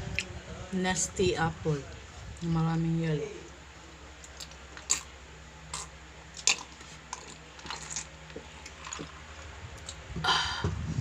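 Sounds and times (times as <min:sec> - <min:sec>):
chewing and biting: 0:04.2 - 0:05.1, 0:05.7 - 0:10.0.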